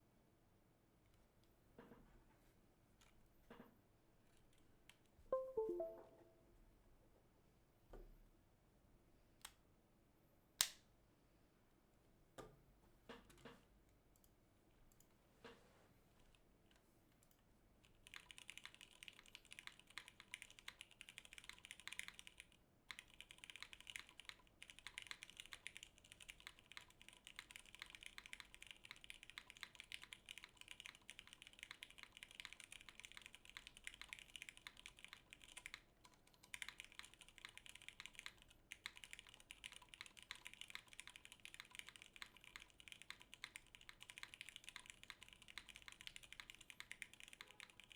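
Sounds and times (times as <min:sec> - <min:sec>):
fast mechanical keyboard typing: 0:17.8 - 0:47.9.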